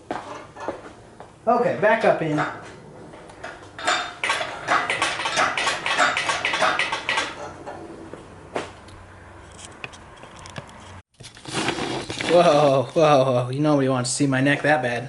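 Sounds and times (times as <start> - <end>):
metallic clinking of tools: 3.4 - 7.8.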